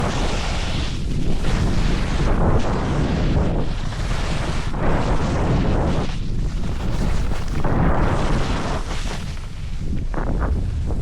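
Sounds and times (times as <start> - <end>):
snow rushing under skis: 0.0 - 11.0
wind buffeting microphone: 0.0 - 11.0.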